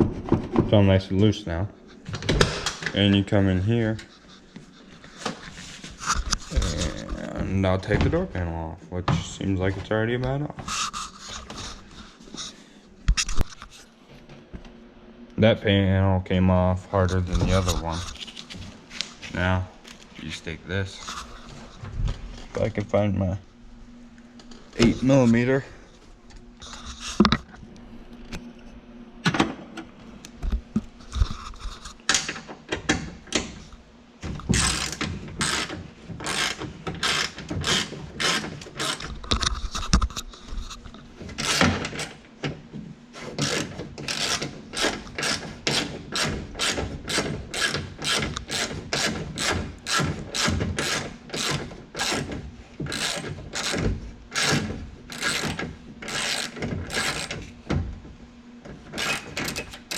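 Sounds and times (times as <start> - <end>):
hand ratchet clicking: 34.6 - 39.4, 43.4 - 52.3, 52.9 - 57.4.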